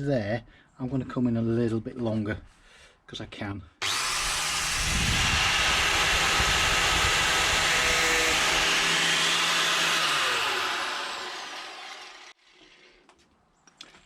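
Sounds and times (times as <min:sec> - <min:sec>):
electric cutting tool running: 0:03.8 - 0:12.4
tool winding down whine: 0:03.8 - 0:12.4.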